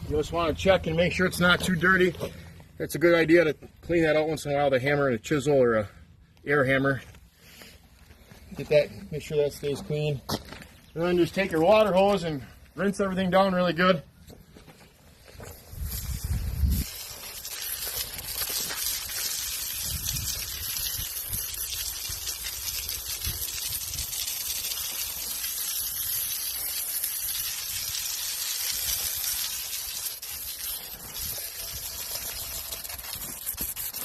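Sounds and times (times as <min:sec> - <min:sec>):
water hose spraying: 0:15.2 - 0:34.0.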